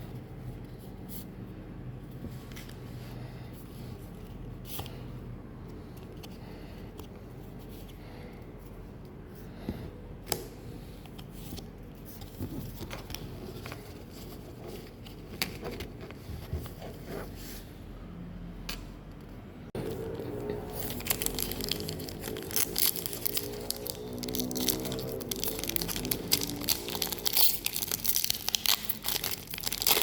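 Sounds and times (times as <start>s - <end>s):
cards clicking and rustling: 20.0s - 30.0s.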